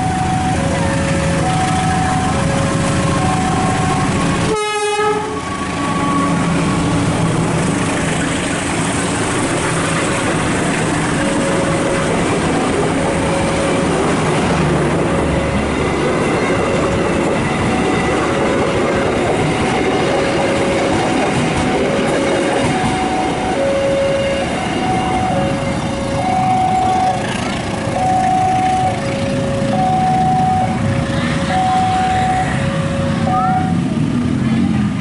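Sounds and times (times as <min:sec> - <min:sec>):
two-note alarm: 0:00.0 - 0:06.3, 0:19.7 - 0:33.8
train passing with clickety-clack: 0:00.0 - 0:35.0.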